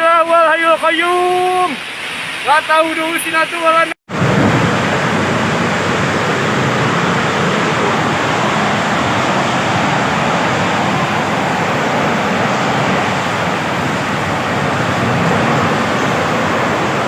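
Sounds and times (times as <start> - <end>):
strong wind roaring: 4.1 - 17.0.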